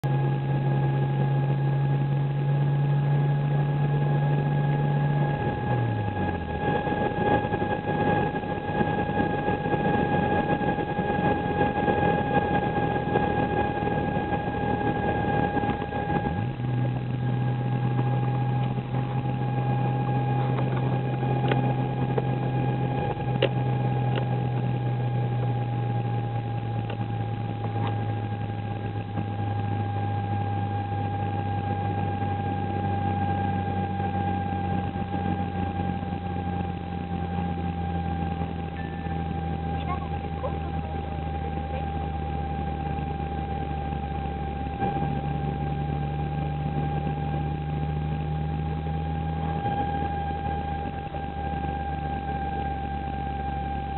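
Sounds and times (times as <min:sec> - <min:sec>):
car engine running: 0:00.0 - 0:53.9
repeating abnormal dashboard noise: 0:00.0 - 0:53.9
road noise: 0:00.0 - 0:53.9.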